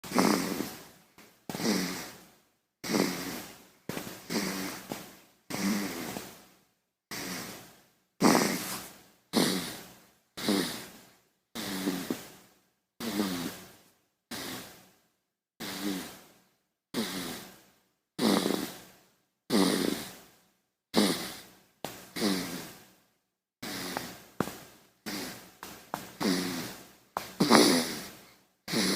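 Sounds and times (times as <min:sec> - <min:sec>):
baby snoring: 0:00.0 - 0:00.9, 0:01.5 - 0:02.2, 0:02.8 - 0:06.3, 0:07.1 - 0:11.0, 0:11.6 - 0:12.4, 0:13.0 - 0:13.7, 0:14.3 - 0:14.8, 0:15.6 - 0:16.2, 0:16.9 - 0:17.6, 0:18.2 - 0:18.8, 0:19.5 - 0:20.2, 0:20.9 - 0:21.5, 0:22.1 - 0:22.8, 0:23.6 - 0:25.5, 0:26.2 - 0:28.9.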